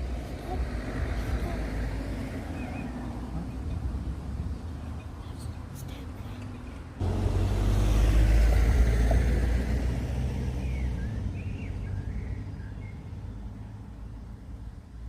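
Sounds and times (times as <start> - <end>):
road vehicle passing by: 0.0 - 15.0
bird chirps: 10.6 - 13.4.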